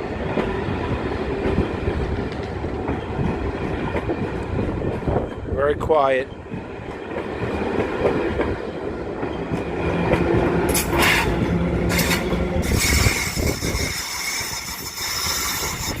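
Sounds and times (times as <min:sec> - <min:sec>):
train wheels rumbling on track: 0:00.0 - 0:16.0
high thin wheel squeal: 0:10.7 - 0:16.0.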